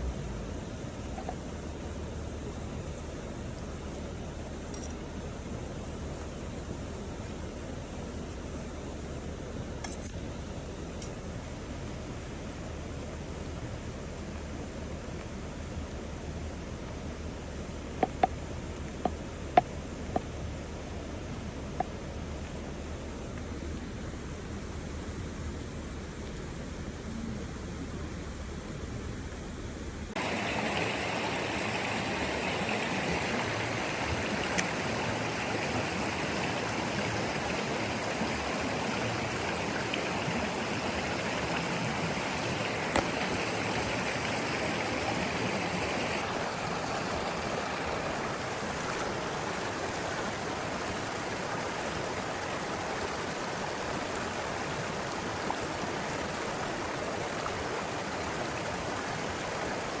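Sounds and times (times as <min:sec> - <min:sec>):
river water rushing: 0:30.2 - 1:00.0.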